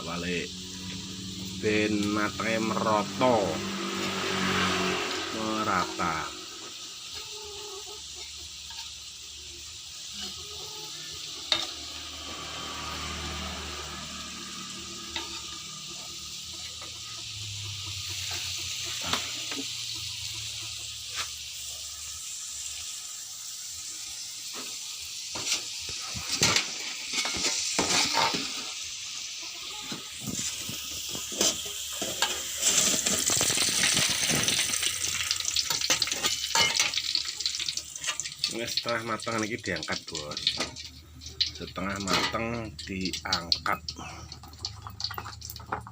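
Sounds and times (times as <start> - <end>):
food sizzling in hot oil: 0.0 - 45.9
utensil scraping pan: 25.3 - 28.8, 29.5 - 37.2.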